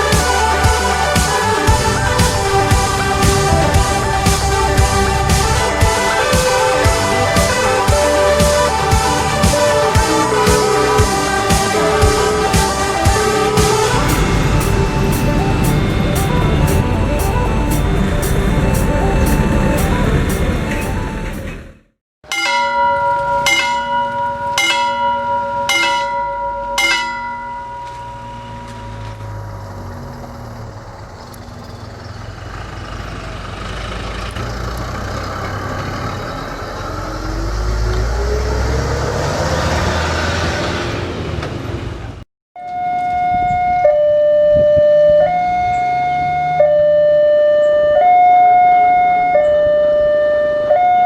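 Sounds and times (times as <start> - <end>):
two-tone crossing siren: 0.0 - 21.7, 22.3 - 30.9, 36.2 - 41.0, 42.6 - 51.0
engine rising in pitch: 0.0 - 21.9, 26.6 - 42.2, 42.8 - 51.0
passing traffic rumble: 0.0 - 22.0, 22.8 - 42.2, 43.1 - 51.0
level crossing ringing chime: 22.3 - 29.1.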